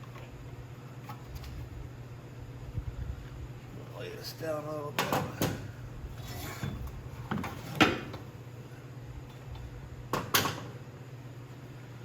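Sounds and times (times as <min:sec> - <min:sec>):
metal clunks and scrapes: 0:06.2 - 0:08.2.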